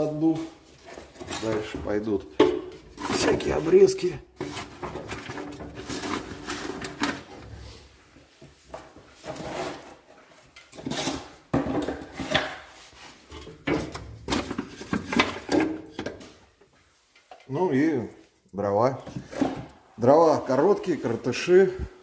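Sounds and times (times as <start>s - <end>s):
wood clunking on wood and stove: 0.9s - 3.3s, 13.3s - 16.4s.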